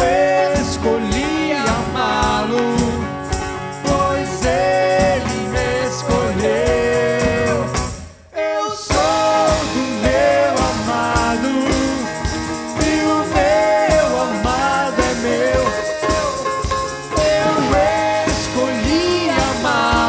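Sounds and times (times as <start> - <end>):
drums steady beat: 0.0 - 8.2, 8.9 - 20.0
acoustic guitar: 0.0 - 20.0
person singing: 0.0 - 20.0.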